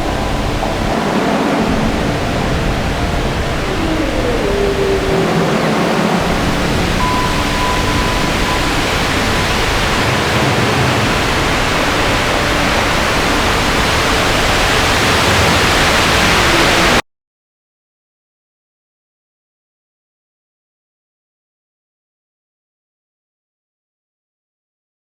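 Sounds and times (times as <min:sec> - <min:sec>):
faint thin tone: 0:00.0 - 0:10.9
loud steady rushing noise: 0:00.0 - 0:17.0.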